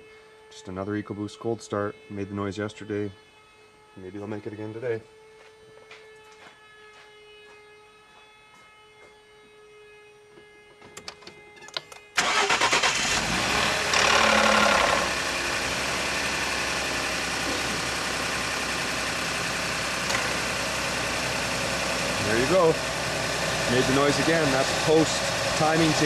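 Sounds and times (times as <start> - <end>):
car engine starting with rattle: 12.2 - 18.4
car engine idling: 12.2 - 26.0.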